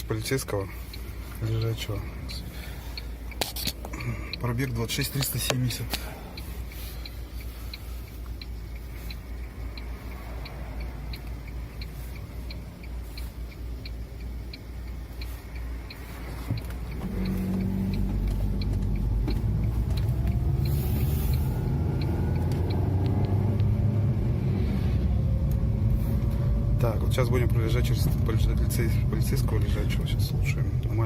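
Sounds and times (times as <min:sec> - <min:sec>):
car engine accelerating: 0:00.0 - 0:31.0
light engine ticking: 0:00.1 - 0:22.8.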